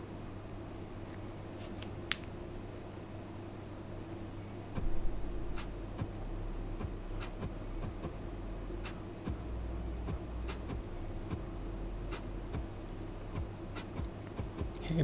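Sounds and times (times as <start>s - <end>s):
steady low hum: 0.0s - 15.0s
trading cards flipping clicks: 1.1s - 2.4s.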